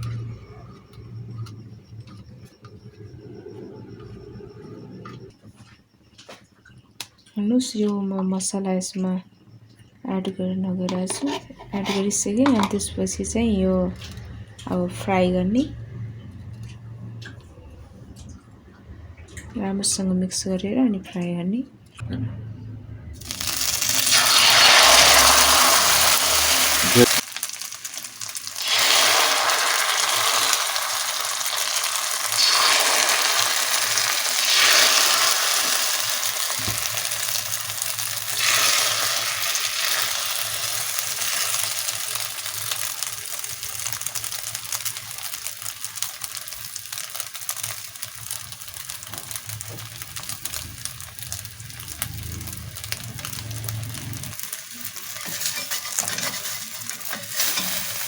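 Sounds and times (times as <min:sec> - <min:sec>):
egg frying in hot oil: 0:23.2 - 0:58.0.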